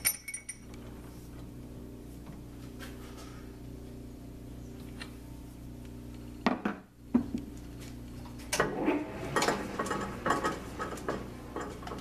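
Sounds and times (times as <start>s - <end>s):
metal tools clinking: 0.0s - 0.8s
steady low hum: 0.0s - 12.0s.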